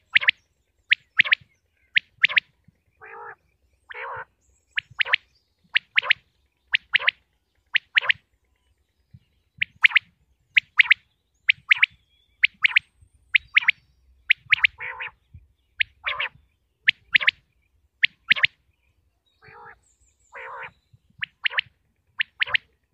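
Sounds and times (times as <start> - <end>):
quail calling: 0.0 - 8.2, 9.6 - 12.8, 13.4 - 15.2, 15.8 - 17.4, 18.0 - 18.6, 19.4 - 22.7
lower rough bird calls: 0.0 - 18.7, 19.4 - 22.9.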